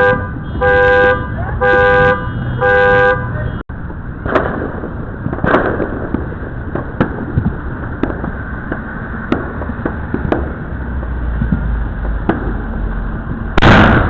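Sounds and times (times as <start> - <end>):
fireworks bangs: 3.8 - 14.0.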